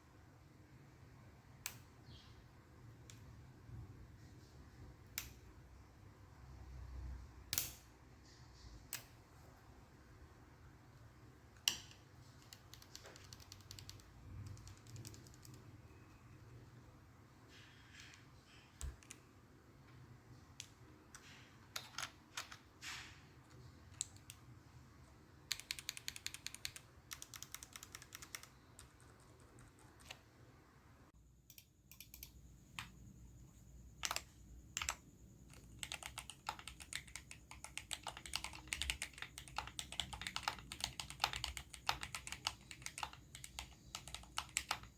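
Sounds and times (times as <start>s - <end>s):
mechanical keyboard typing: 11.6s - 16.0s, 20.6s - 22.7s, 25.4s - 30.3s, 31.5s - 32.9s, 34.0s - 44.9s.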